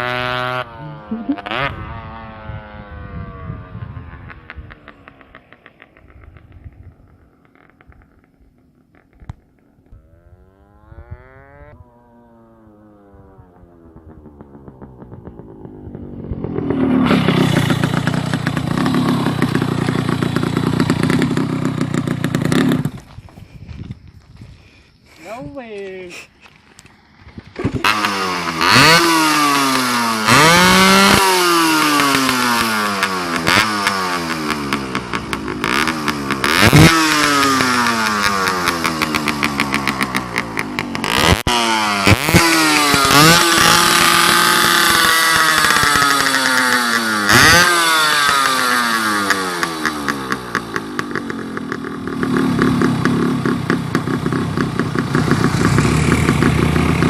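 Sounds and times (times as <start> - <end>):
two-stroke engine revving roughly: 0.0 - 3.1, 13.9 - 23.0, 27.8 - 57.0.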